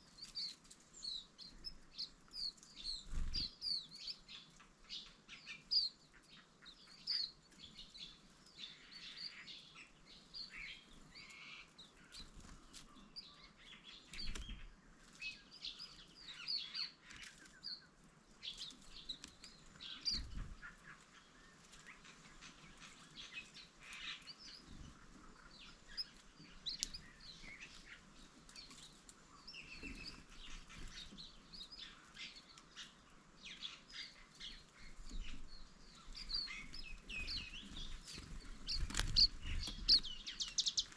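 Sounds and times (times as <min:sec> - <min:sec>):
birds chirping and twittering: 0:00.0 - 0:40.9.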